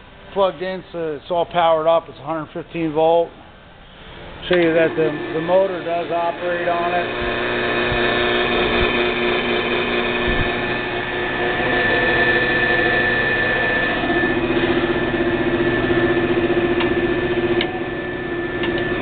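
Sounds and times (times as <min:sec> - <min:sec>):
bandsaw motor humming: 0:04.4 - 0:19.0.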